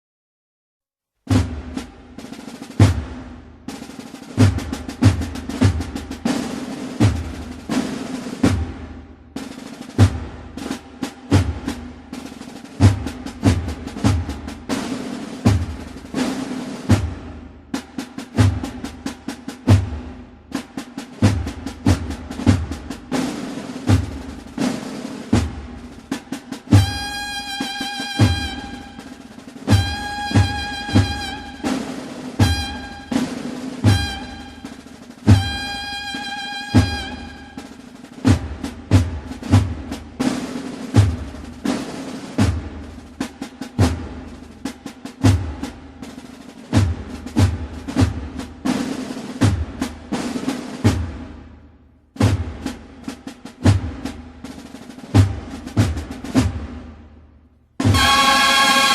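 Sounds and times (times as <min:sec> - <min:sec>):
heavy bass drum beats: 0:01.3 - 0:51.6, 0:52.2 - 0:57.2, 0:57.8 - 0:58.9
snare drum rolls: 0:01.3 - 0:58.9
cornets holding a long note: 0:26.8 - 0:29.1, 0:57.9 - 0:58.9
bass drum strokes: 0:57.8 - 0:58.9.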